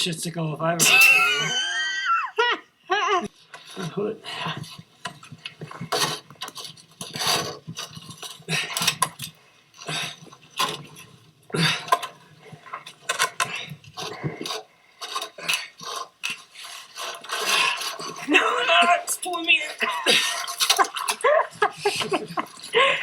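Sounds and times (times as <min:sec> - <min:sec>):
ice being chipped and scraped: 0:15.0 - 0:21.2.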